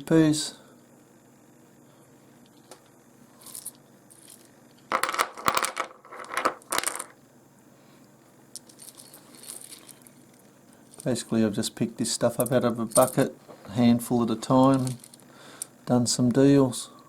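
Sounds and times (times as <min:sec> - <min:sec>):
stones clinking together: 0:04.9 - 0:07.1.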